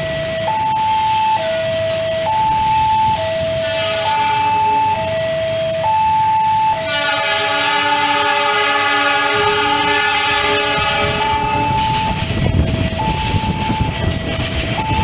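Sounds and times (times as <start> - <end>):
low diesel engine rumble: 0.0 - 15.0
two-tone warning alarm: 0.0 - 15.0
locomotive horn chord: 2.7 - 5.1, 6.6 - 13.4.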